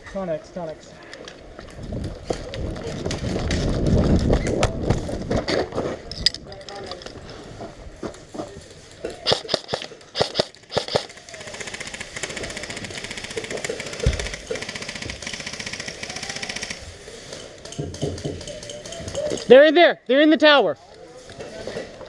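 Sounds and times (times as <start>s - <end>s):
airsoft rifle cracks: 9.2s - 12.4s
rapid full-auto ticking: 9.3s - 16.8s.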